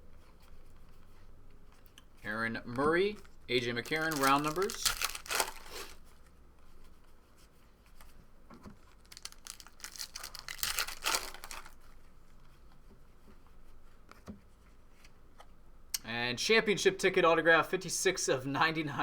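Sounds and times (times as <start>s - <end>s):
cards and wrapper rustling: 2.8s - 6.3s, 8.8s - 12.0s.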